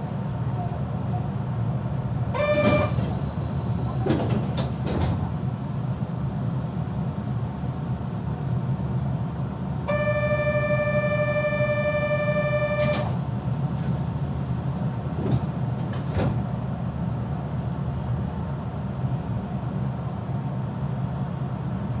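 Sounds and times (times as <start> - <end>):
train low hum: 0.0 - 22.0
train door chime: 2.3 - 4.5, 9.9 - 13.2.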